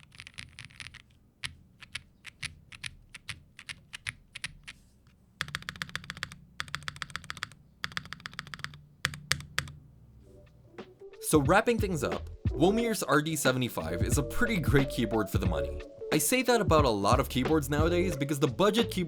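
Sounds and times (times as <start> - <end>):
typing on mechanical keyboard: 0.0 - 4.8, 5.4 - 9.8.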